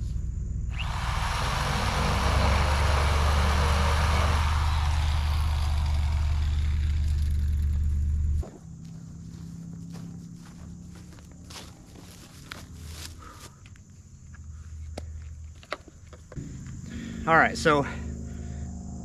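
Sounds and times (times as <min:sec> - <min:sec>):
reciprocating saw cutting wood: 0:00.7 - 0:07.8.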